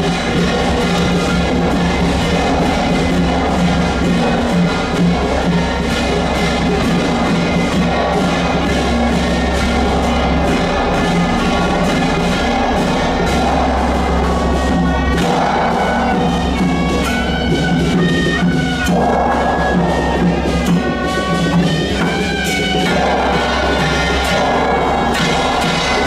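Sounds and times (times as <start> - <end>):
loud music with heavy bass: 0.0 - 17.4, 22.8 - 26.0.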